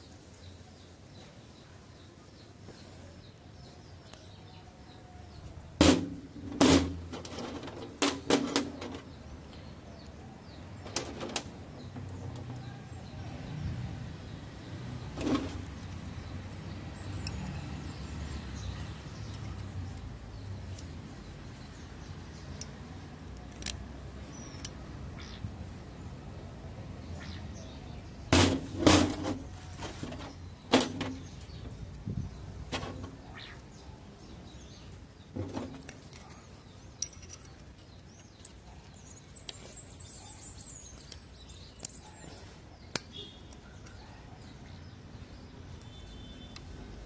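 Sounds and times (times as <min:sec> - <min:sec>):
metallic knocks and clanks: 0:05.8 - 0:09.2.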